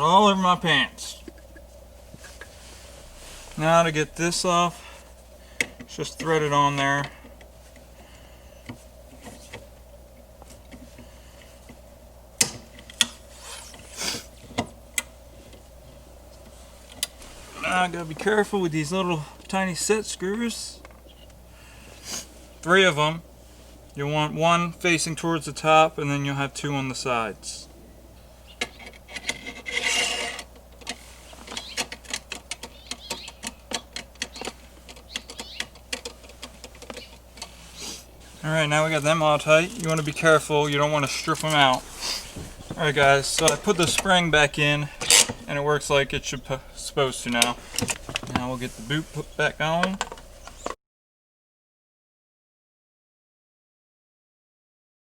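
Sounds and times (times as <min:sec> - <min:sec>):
short scrapes of parts: 0:13.1 - 0:14.3, 0:29.2 - 0:31.8, 0:41.8 - 0:42.6
clicks of metal and plastic parts: 0:30.3 - 0:37.5.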